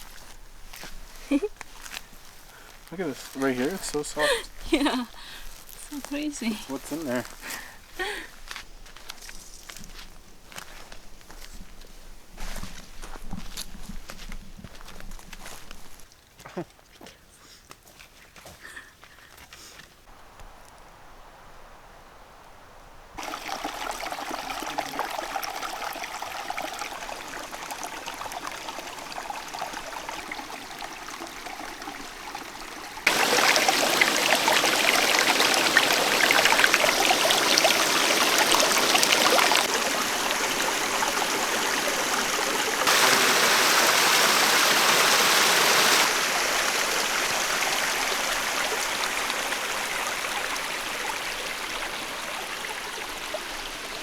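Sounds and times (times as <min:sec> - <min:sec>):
water rushing and splashing: 0:00.0 - 0:08.5, 0:20.1 - 0:54.0.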